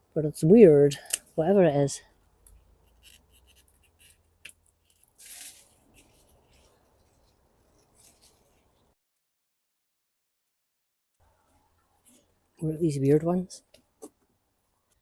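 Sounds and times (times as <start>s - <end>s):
pepper plants rustling: 4.8s - 8.8s.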